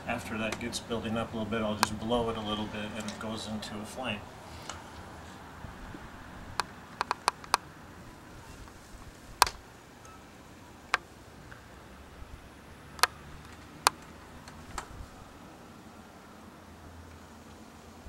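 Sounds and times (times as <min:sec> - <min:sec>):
tinder crackling: 0:00.0 - 0:10.0.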